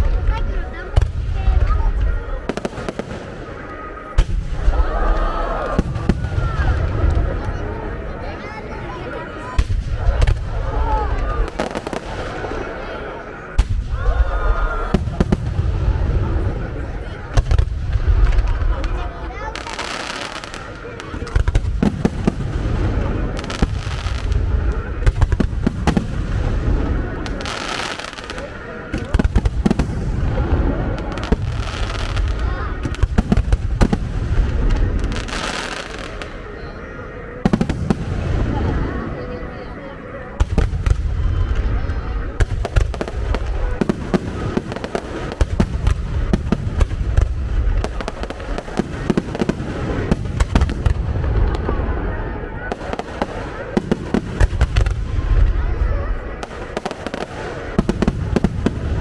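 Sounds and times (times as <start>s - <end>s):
fireworks bursting: 0.0s - 59.0s
fireworks rumble and crackle: 0.0s - 59.0s.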